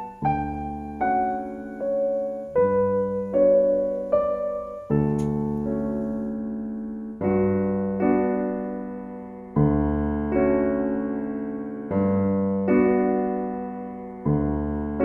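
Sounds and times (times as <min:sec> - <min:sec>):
slow piano music: 0:00.0 - 0:15.0.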